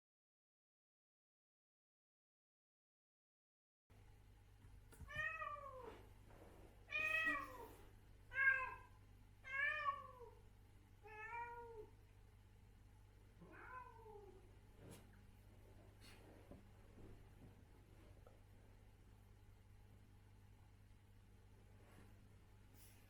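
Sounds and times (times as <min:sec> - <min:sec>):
cat meowing: 0:06.9 - 0:07.7, 0:08.3 - 0:10.4, 0:11.0 - 0:11.9, 0:13.4 - 0:14.4.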